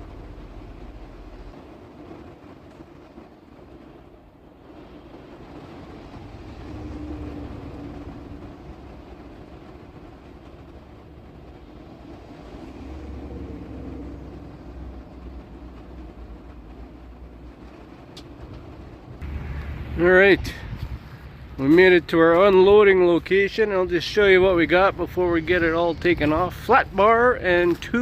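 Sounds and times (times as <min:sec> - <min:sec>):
truck engine and road rumble: 0:00.0 - 0:28.0.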